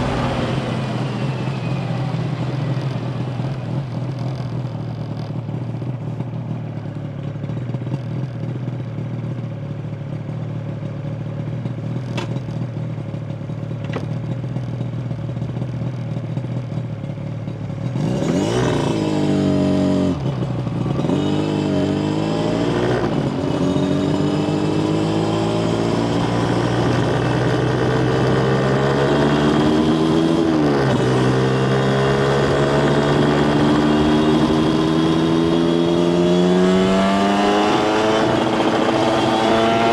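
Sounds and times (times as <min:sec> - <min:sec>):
two-stroke motorcycle engine revving: 0:17.7 - 0:39.9.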